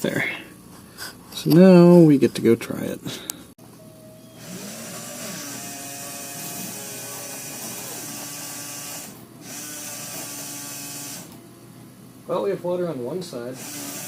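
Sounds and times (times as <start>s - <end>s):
electric washer pump running: 4.4s - 11.4s, 13.4s - 14.0s.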